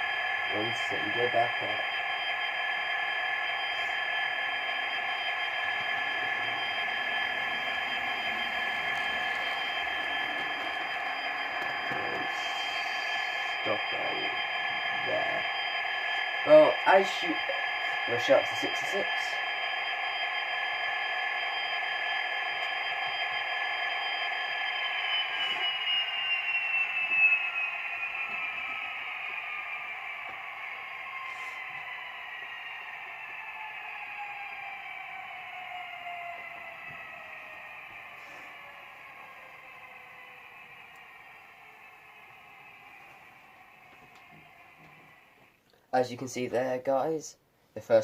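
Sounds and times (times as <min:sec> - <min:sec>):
model train whirring: 0:00.0 - 0:45.6
thin whistling tones: 0:00.0 - 0:45.6.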